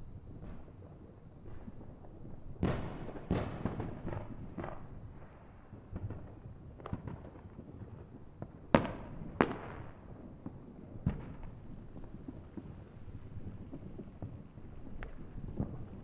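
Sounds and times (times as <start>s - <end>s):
fireworks banging: 8.8s - 16.0s.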